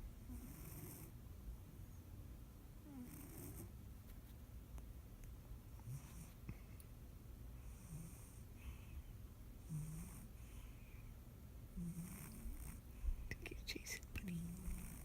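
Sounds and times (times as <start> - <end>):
cat snoring faintly: 0.2 - 1.2, 2.8 - 3.8, 5.7 - 6.7, 7.6 - 15.0.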